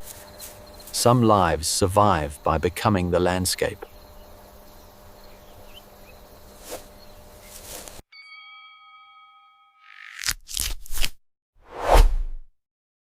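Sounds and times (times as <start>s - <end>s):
faint hum: 0.1s - 8.0s
chime-like ringing tone: 8.1s - 10.1s.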